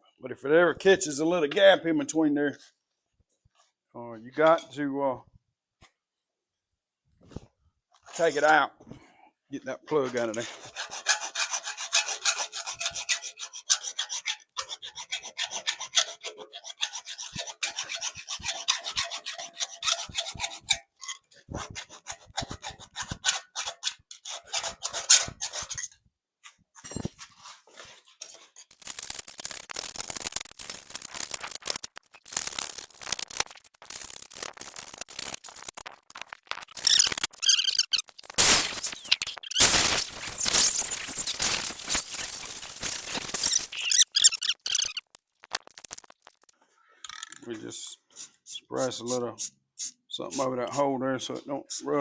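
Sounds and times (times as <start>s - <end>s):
file scraping steel pipe: 9.9s - 26.0s.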